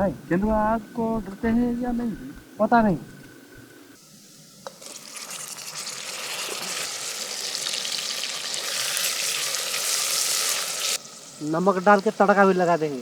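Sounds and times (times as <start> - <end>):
food sizzling in hot oil: 4.0 - 13.0.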